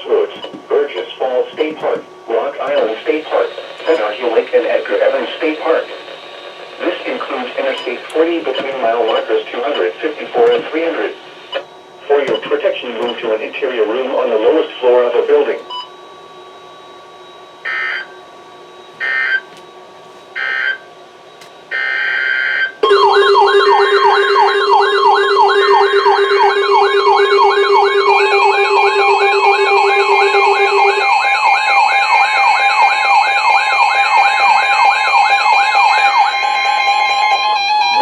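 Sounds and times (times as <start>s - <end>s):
warbling alarm tones: 0.0s - 13.4s, 16.2s - 38.0s
alert data bursts: 21.7s - 38.0s.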